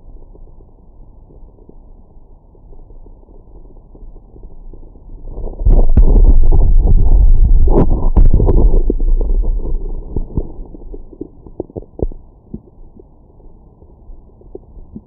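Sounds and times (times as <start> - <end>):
stomach rumbling: 0.0 - 15.0
stomach gurgles and pops: 2.5 - 13.2, 13.8 - 15.0.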